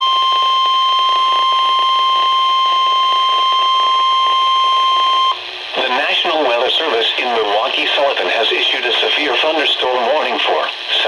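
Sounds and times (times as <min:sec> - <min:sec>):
high-pitched alarm tone: 0:00.0 - 0:05.4.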